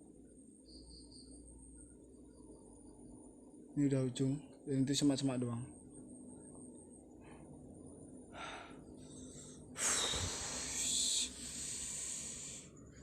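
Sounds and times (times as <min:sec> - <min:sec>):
faint hiss: 0:08.4 - 0:12.9.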